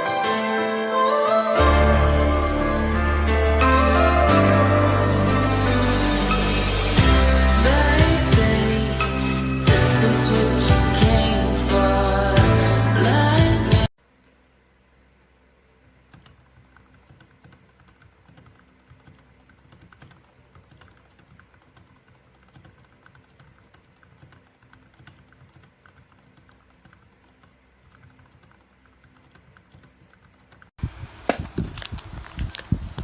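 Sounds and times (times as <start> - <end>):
mechanical keyboard typing: 16.1 - 30.7.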